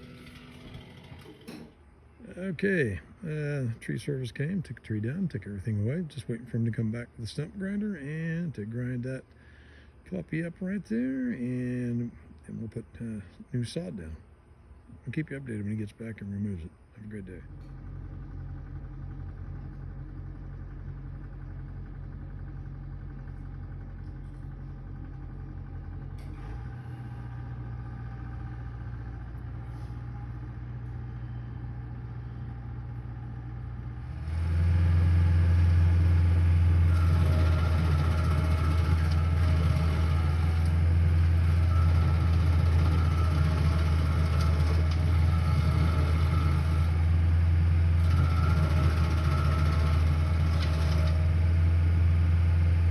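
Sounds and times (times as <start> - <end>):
stump grinder engine running: 0.0 - 1.8, 17.1 - 52.9.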